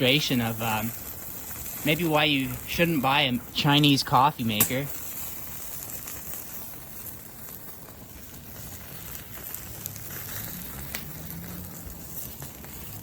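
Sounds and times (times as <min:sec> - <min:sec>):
fire crackling and hissing: 0:00.0 - 0:13.0
sharp pops: 0:03.8 - 0:13.0.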